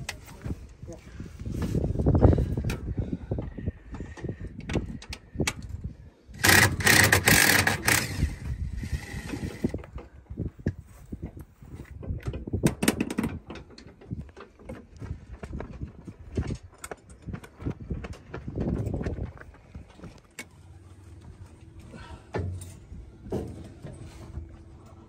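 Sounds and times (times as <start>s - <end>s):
metal clanks and knocks: 12.1s - 14.9s, 22.2s - 24.4s.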